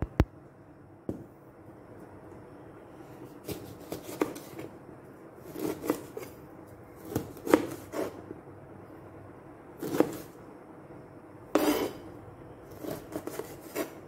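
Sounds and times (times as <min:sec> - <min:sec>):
knife cutting lemon on board: 0:03.4 - 0:04.7, 0:05.4 - 0:06.4, 0:07.0 - 0:08.2, 0:09.8 - 0:10.3, 0:11.5 - 0:12.0, 0:12.7 - 0:14.0.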